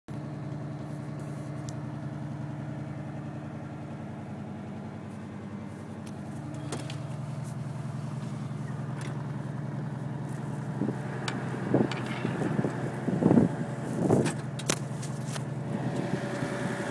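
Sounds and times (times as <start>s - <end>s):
engine idling: 0.1s - 16.9s
knocks and rustles: 6.4s - 7.6s.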